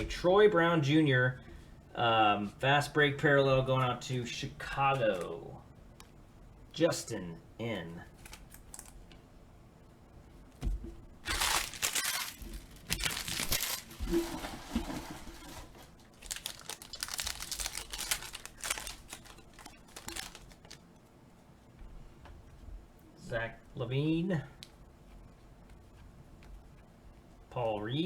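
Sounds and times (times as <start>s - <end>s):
wrapper tearing and crinkling: 11.2s - 20.8s.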